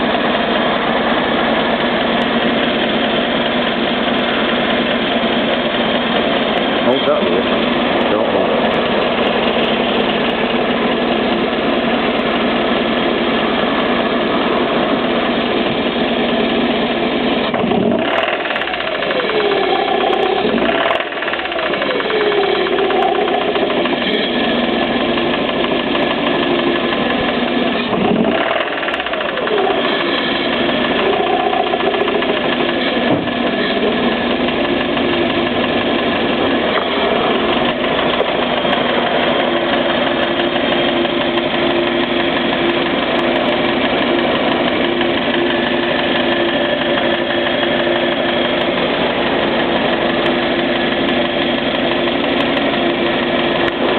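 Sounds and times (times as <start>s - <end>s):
car engine running: 0.0s - 53.9s
engine top end noise: 17.2s - 53.9s.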